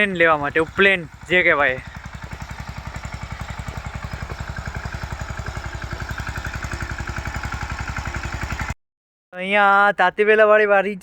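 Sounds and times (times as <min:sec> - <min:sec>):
engine chugging: 0:00.0 - 0:08.8.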